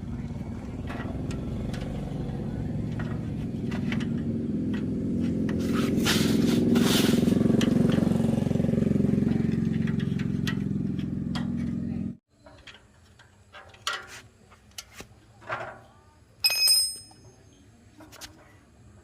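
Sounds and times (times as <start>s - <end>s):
engine running: 0.0s - 12.2s.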